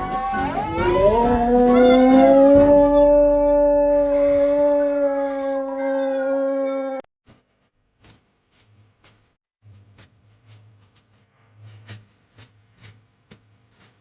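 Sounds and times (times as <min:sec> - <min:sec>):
dog howling: 0:00.0 - 0:07.1.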